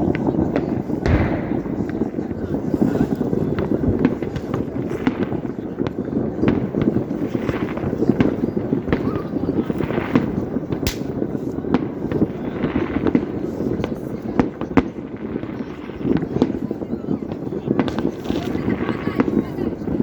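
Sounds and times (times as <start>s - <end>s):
fireworks crackling and popping: 0.0s - 20.0s
loud firework crack: 0.0s - 20.0s.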